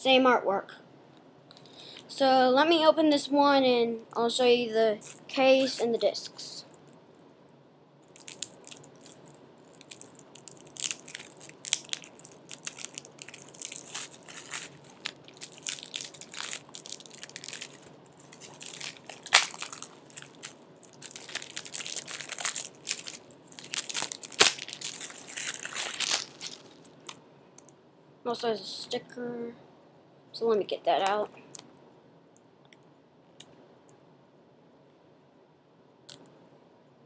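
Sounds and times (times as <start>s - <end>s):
plastic wrap crinkling: 5.0s - 5.8s, 8.0s - 27.7s.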